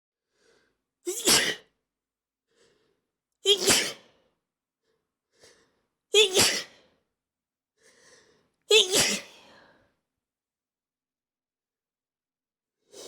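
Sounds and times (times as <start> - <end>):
person sneezing: 1.1 - 1.7, 3.5 - 4.0, 6.2 - 6.7, 8.7 - 9.4.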